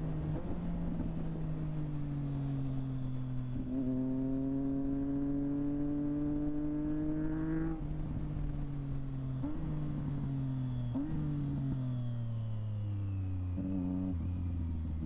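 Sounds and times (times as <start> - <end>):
motorcycle engine accelerating: 2.7 - 15.0.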